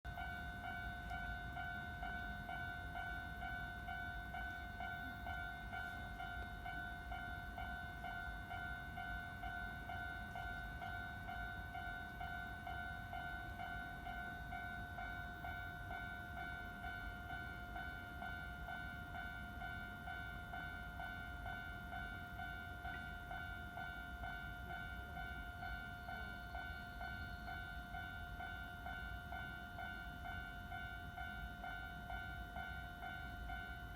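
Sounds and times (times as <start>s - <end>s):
level crossing warning bell: 0.1s - 33.9s.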